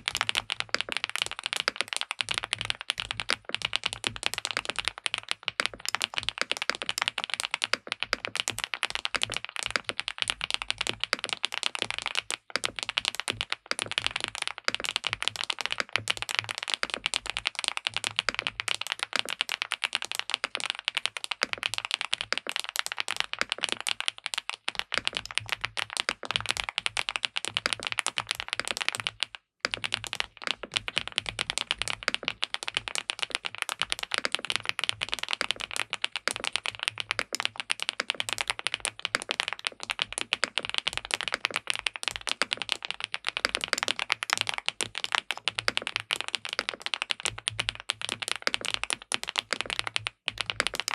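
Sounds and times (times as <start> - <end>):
mechanical keyboard typing: 0.0 - 50.9.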